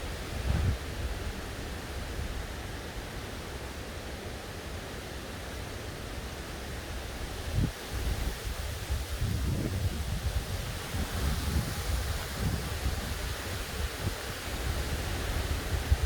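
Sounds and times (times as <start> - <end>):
wind gusts buffeting microphone: 0.0 - 2.4, 7.4 - 16.0
heavy rain hissing: 7.1 - 16.0.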